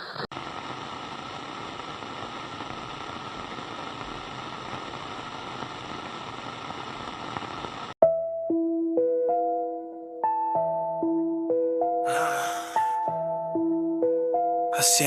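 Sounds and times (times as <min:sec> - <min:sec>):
static-like hiss: 0:00.0 - 0:08.0.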